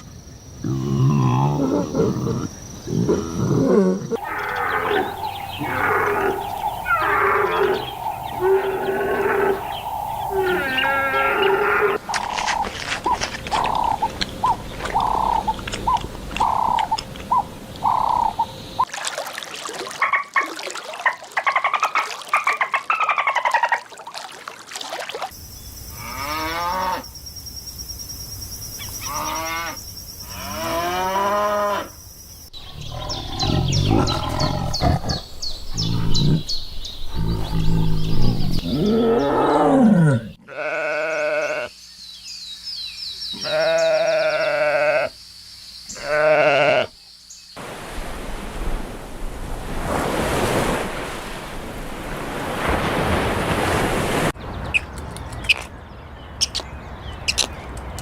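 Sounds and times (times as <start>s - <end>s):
animal calls: 0.7s - 18.5s.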